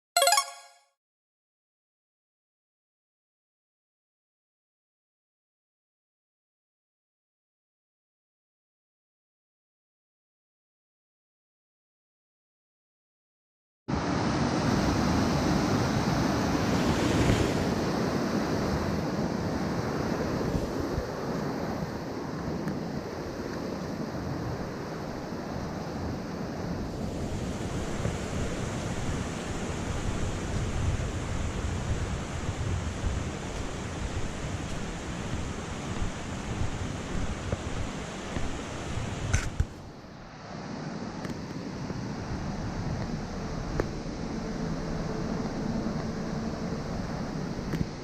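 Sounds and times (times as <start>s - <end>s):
mountain stream rushing: 27.2s - 48.0s.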